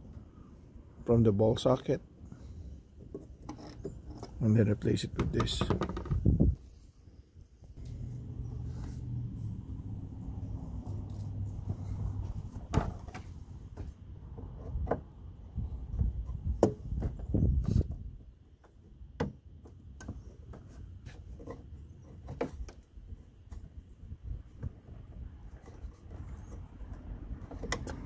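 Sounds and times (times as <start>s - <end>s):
low hum: 7.7s - 12.7s.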